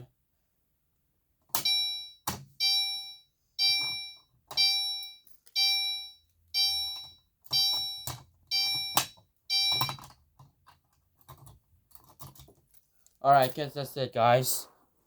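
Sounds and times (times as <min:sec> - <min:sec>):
fire alarm horn blasts: 0:01.6 - 0:09.9.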